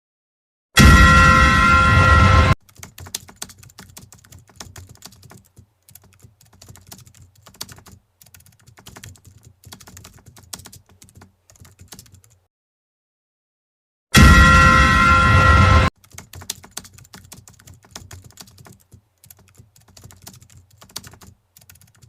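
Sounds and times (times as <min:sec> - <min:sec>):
rapid irregular clicking: 0:02.6 - 0:12.4, 0:16.0 - 0:22.0.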